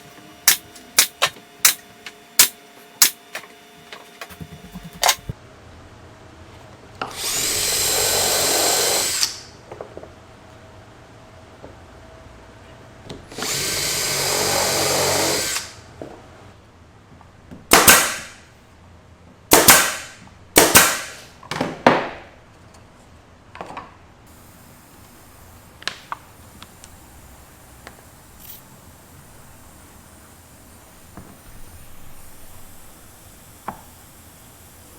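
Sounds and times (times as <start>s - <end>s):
power drill running: 7.1s - 9.4s, 13.3s - 15.7s, 24.6s - 34.9s.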